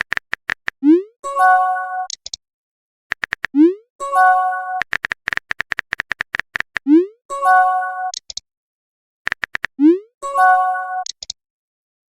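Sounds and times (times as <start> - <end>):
quick ticks: 0.0 - 0.8, 3.1 - 3.6, 4.8 - 6.9, 9.3 - 9.8
rising pop sound effect: 0.6 - 1.1, 3.4 - 3.8, 6.8 - 7.2.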